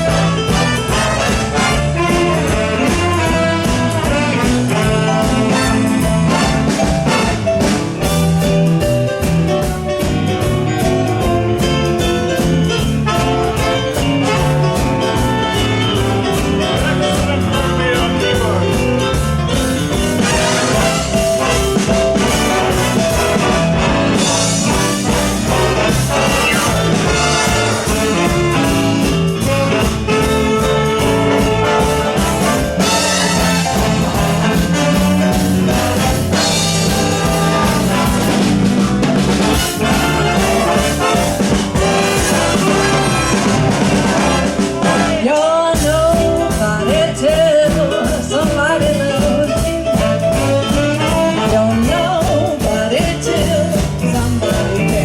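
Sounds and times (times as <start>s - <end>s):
trumpets and trombones: 0.0s - 8.1s, 12.9s - 18.0s, 20.0s - 45.5s, 49.9s - 51.9s
big band swing music: 0.0s - 55.0s
steady drum-kit beat: 0.0s - 55.0s.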